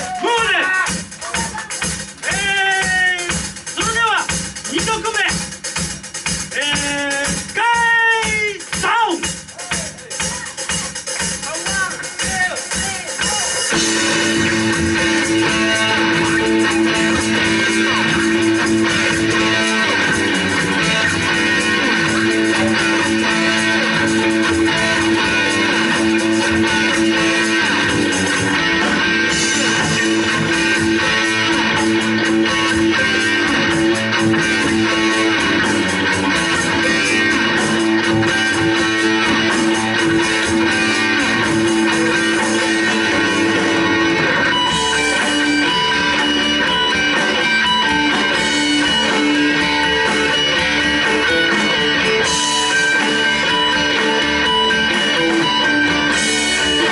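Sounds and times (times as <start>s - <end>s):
bass guitar: 0.0s - 56.9s
drums: 0.0s - 56.9s
electric guitar: 0.0s - 56.9s.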